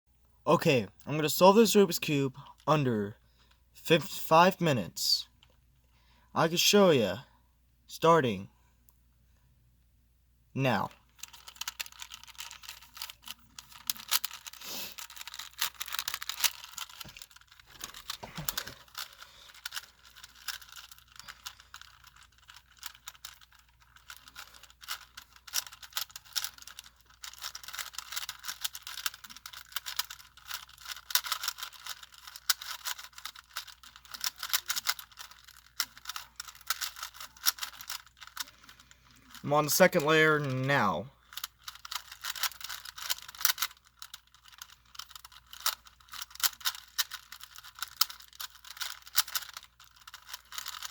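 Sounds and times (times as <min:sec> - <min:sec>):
puzzle cube clicking and rattling: 0:10.8 - 0:50.9.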